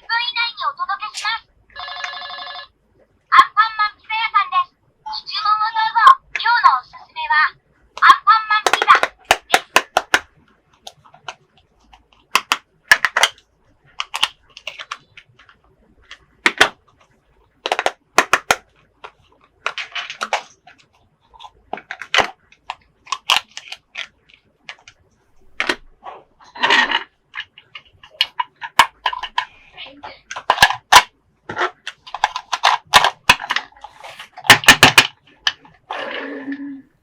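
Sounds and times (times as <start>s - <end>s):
plastic toy pieces clicking: 8.6s - 10.2s, 12.3s - 13.4s, 14.0s - 15.0s, 17.6s - 18.6s
plastic pieces rattling: 19.6s - 20.8s.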